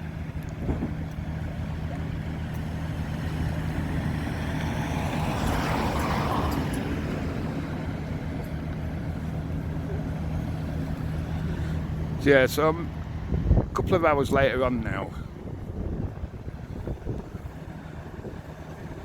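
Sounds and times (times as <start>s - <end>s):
low engine hum: 0.0s - 19.0s.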